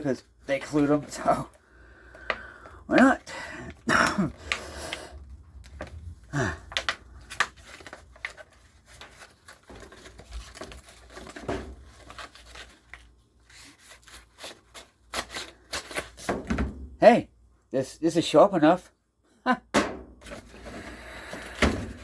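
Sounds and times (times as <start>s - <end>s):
plastic packaging crinkling: 0.0s - 16.2s.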